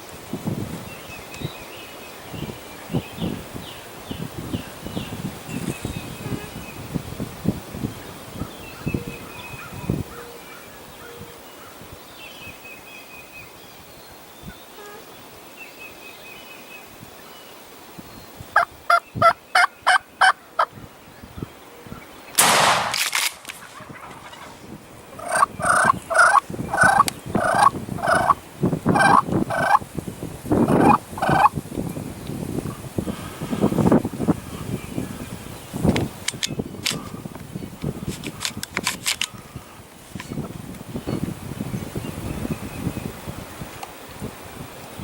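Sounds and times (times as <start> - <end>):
rush of wind-like noise: 0.0 - 45.0
wild turkey yelping: 25.2 - 29.8, 30.7 - 31.5.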